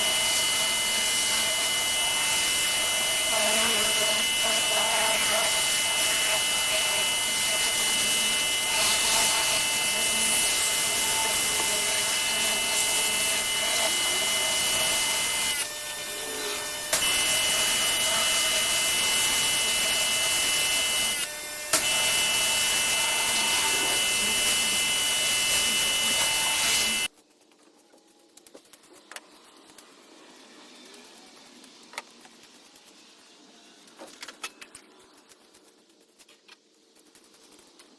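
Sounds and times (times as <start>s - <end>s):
pressure washer spraying: 0.0s - 27.1s.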